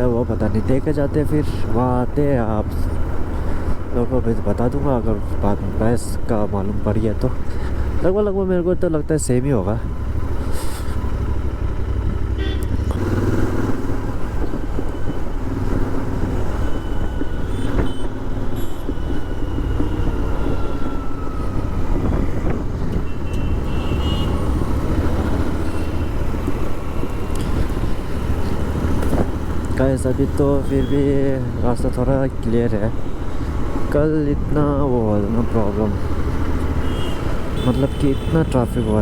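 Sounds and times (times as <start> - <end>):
motorcycle engine droning: 0.0 - 39.0
wind rushing over microphone: 12.0 - 36.3.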